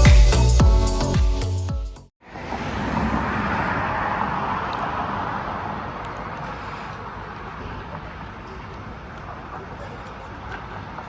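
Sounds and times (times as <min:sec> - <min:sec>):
car passing by: 0:02.2 - 0:07.9.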